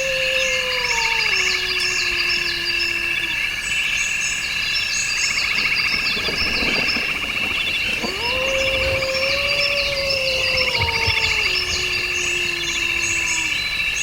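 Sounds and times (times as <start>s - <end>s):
frogs and insects trilling: 0.0s - 14.0s
low wailing tone: 6.2s - 13.9s.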